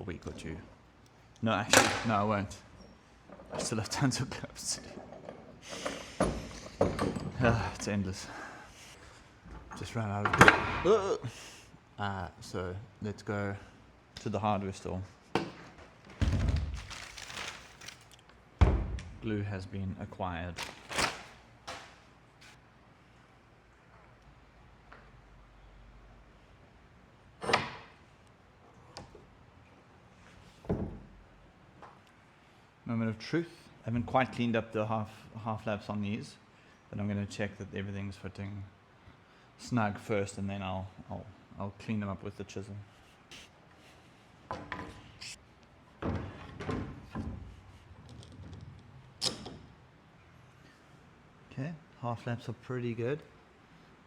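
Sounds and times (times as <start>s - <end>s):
wooden thuds: 15.4s - 17.6s
wood sliding and knocking: 46.0s - 48.9s.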